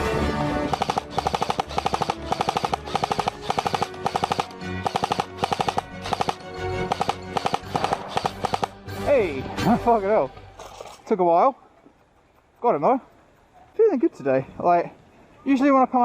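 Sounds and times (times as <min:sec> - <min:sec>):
airsoft gun firing bursts: 0:00.6 - 0:08.8.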